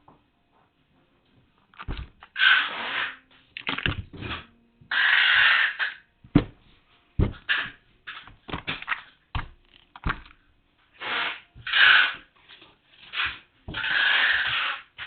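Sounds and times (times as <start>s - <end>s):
cardboard items knocking: 6.3s - 10.4s.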